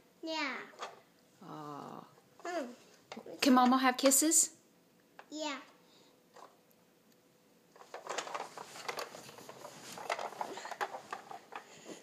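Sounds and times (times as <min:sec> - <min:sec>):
clothes rustling: 0:07.8 - 0:12.0.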